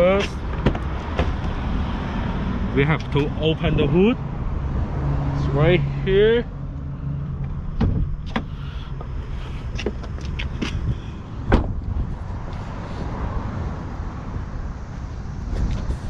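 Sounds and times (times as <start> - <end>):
hood release clicks and knocks: 0.2 - 1.6, 7.4 - 11.9
thump: 7.8 - 8.5, 11.5 - 11.8.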